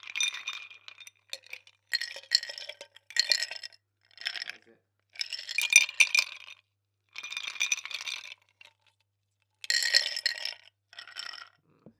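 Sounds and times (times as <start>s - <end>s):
ice cubes clinking in glass: 0.0s - 3.6s, 5.2s - 6.5s, 7.2s - 8.5s, 9.7s - 11.5s.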